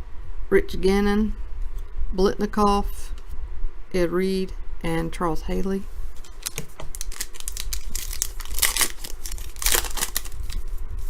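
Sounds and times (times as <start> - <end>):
wrapper tearing and crinkling: 6.2 - 10.6.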